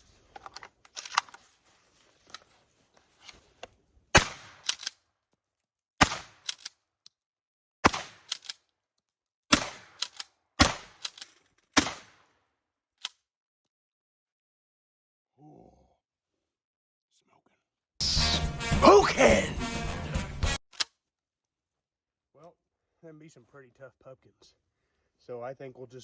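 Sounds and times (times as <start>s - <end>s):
shotgun blasts: 4.1s - 4.7s, 6.0s - 6.5s, 7.8s - 8.3s, 9.5s - 10.0s, 10.6s - 11.0s, 11.8s - 12.2s.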